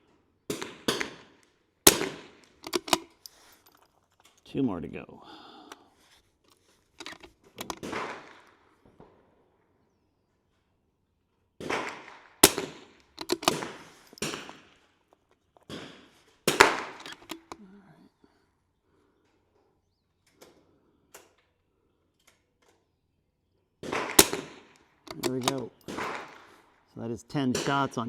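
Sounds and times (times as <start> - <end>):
rifle shots cracking: 0.5 - 3.2, 7.0 - 8.7, 11.6 - 14.9, 15.7 - 17.7, 23.8 - 26.8.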